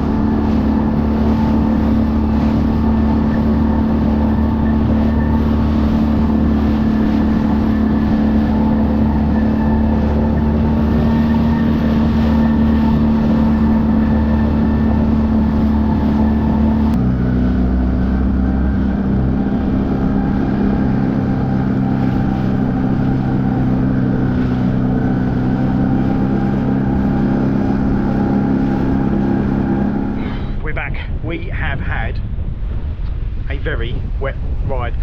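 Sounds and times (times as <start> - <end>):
outboard motor running: 0.0 - 31.3.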